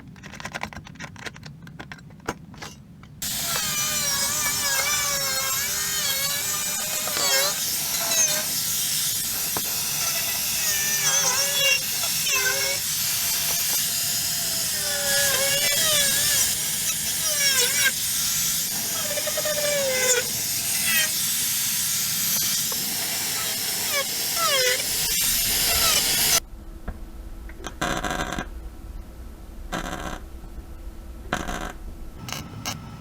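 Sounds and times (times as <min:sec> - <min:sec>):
power tool cutting sheet metal: 0:03.2 - 0:26.4.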